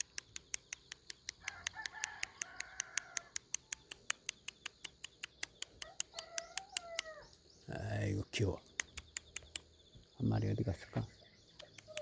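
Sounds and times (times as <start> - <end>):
rapid ticking clicks: 0.0 - 7.0, 8.6 - 9.7.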